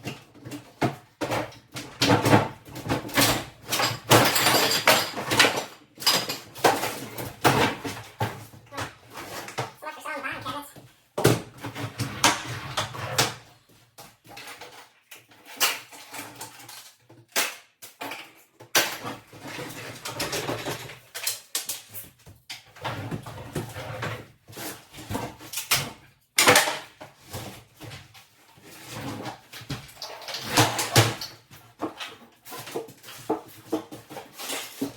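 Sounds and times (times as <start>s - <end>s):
wooden cabinets knocking and clattering: 0.0s - 9.8s.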